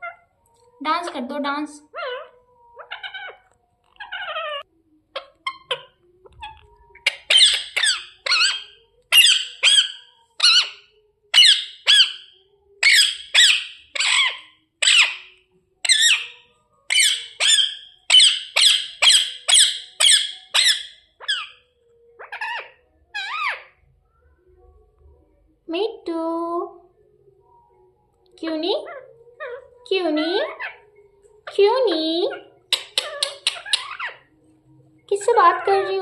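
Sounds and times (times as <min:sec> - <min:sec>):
parrot screeching: 0:01.9 - 0:21.6, 0:22.2 - 0:23.8, 0:30.3 - 0:30.8, 0:32.3 - 0:34.3.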